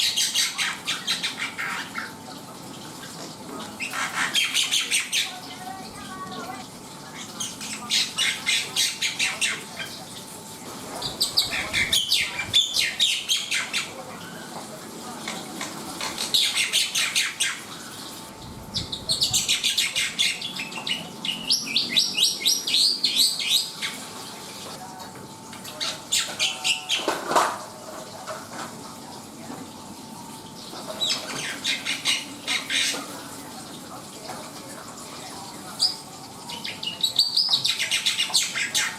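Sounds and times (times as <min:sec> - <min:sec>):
starling singing: 0:00.0 - 0:02.2, 0:03.6 - 0:14.5, 0:15.2 - 0:17.7, 0:18.7 - 0:24.1, 0:25.6 - 0:27.2, 0:30.8 - 0:33.2, 0:35.4 - 0:38.9.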